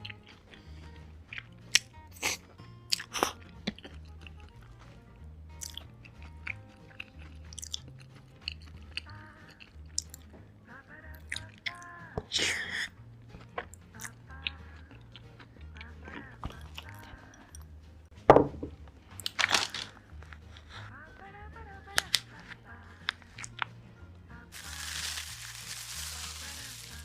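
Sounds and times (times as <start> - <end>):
food crunching: 0.0 - 4.9, 5.5 - 10.4, 19.1 - 20.8, 21.9 - 23.7, 24.5 - 27.0
background music: 0.0 - 27.0.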